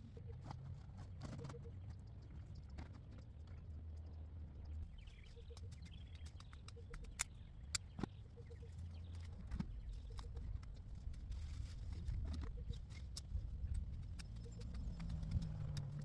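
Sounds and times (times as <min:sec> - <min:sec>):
branches clicking and snapping: 0:09.1 - 0:16.0.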